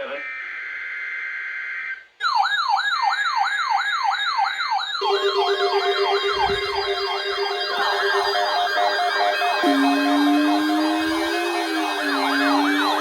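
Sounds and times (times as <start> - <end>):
electronic siren sweeps: 5.0 - 13.0
steady low tone: 5.0 - 13.0.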